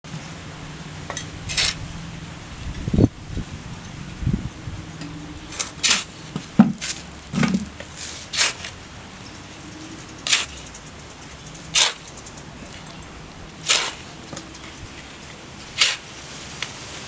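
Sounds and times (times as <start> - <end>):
scraping swishes: 13.6 - 14.1.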